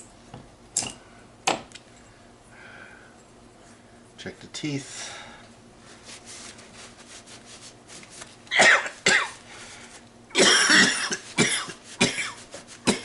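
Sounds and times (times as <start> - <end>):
man coughing: 8.5 - 9.4, 10.4 - 13.0.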